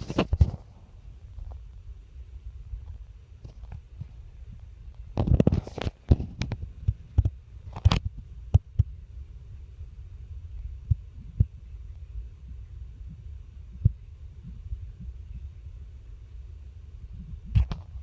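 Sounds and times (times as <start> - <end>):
ceiling fan rumbling: 0.0 - 18.0.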